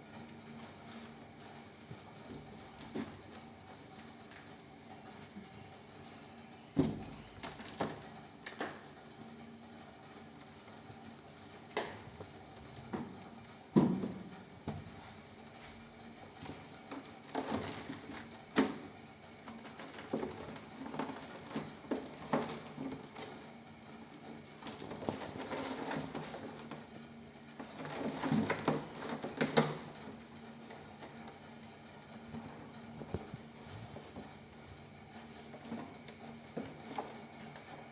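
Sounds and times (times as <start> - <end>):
kittens tapping and scuffling: 16.4 - 23.6, 24.2 - 37.9.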